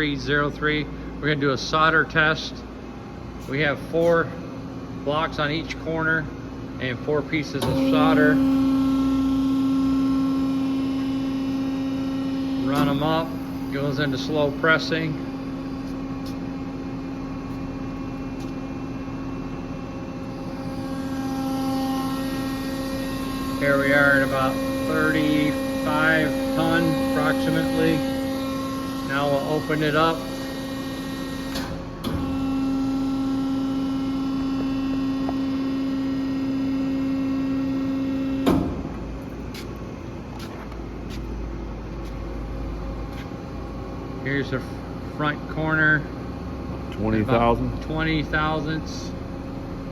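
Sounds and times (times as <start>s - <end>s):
hydraulic press pump humming: 0.0s - 49.9s
press clunk: 7.6s - 8.5s, 38.4s - 39.0s.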